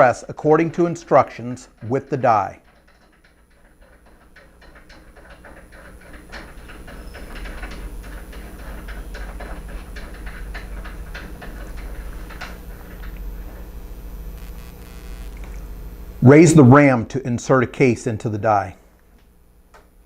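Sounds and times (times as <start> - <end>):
metallic clicks and rattles: 0.0 - 13.2.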